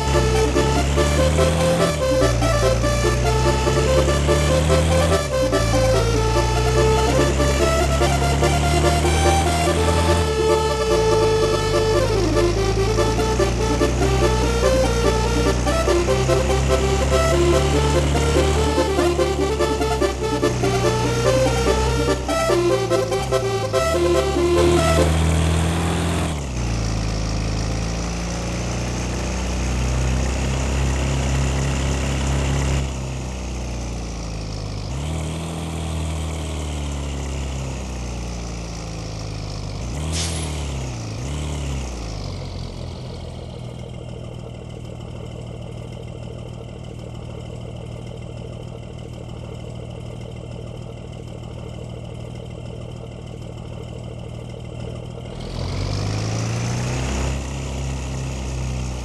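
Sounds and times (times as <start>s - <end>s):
motorcycle engine revving: 0.0s - 33.1s, 55.3s - 59.0s
motorcycle engine idling: 42.4s - 55.4s.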